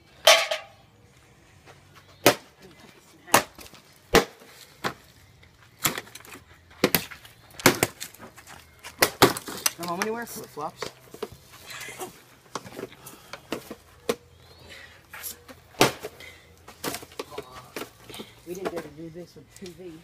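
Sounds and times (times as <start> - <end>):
machete chopping plastic: 3.3 - 5.0, 6.8 - 8.2, 8.8 - 10.0, 15.8 - 16.2.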